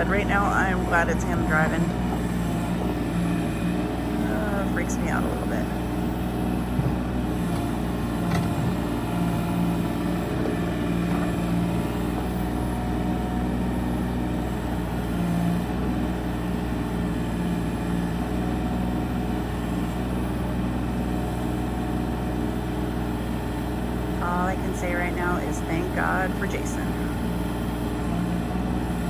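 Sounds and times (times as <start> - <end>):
excavator diesel engine running: 0.0 - 29.0.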